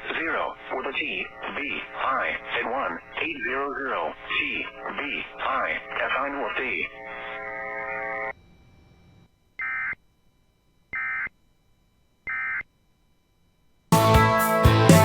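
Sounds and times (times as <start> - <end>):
screeching digital data tones: 9.6 - 10.0, 11.0 - 11.3, 12.3 - 12.7.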